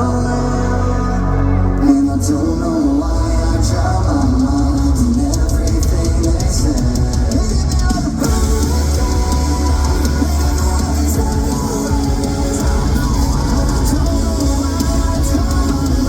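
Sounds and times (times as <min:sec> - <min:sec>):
bass guitar: 0:00.0 - 0:16.0
distorted electric guitars: 0:00.0 - 0:16.0
drum kit: 0:01.8 - 0:16.0.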